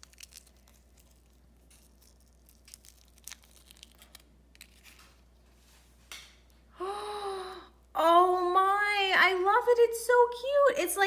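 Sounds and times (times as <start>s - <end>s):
plastic packaging crinkling: 0.0s - 5.4s.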